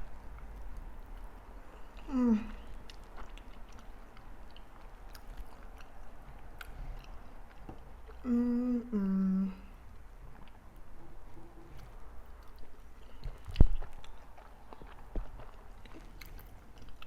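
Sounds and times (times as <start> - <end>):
close chewing of soft food: 0.0 - 17.0
person humming mm-mm: 2.0 - 2.6, 8.2 - 9.8.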